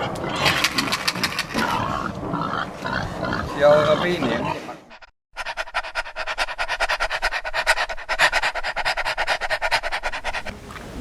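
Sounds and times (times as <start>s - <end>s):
dog panting: 4.8s - 11.0s.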